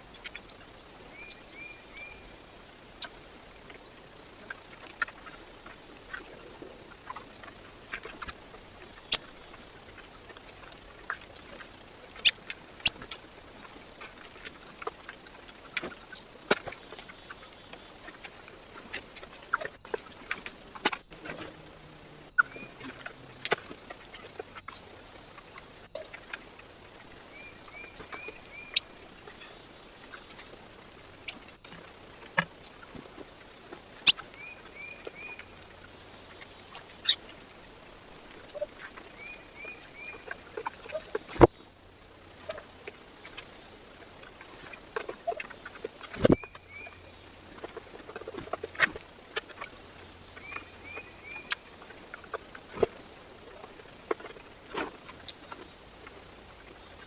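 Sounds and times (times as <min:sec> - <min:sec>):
birds pecking on feeder: 0:04.4 - 0:35.4.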